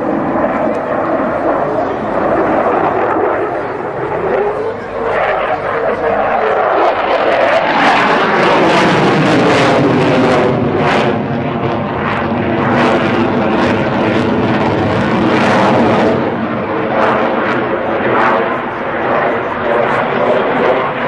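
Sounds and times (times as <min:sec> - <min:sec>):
jet engine roar: 0:00.0 - 0:21.0.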